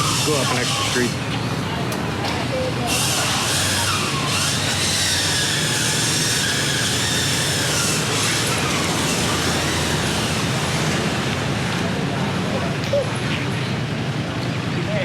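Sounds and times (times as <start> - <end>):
vehicle passing with whine: 3.2 - 13.6.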